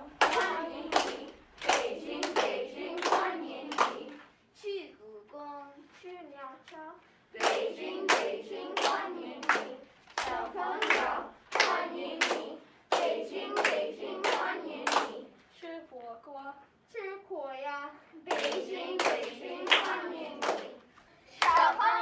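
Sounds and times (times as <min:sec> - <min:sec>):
children singing a chant: 0:00.0 - 0:04.3, 0:07.4 - 0:15.4, 0:18.2 - 0:22.0
sharp hand claps: 0:00.2 - 0:04.1, 0:07.4 - 0:15.2.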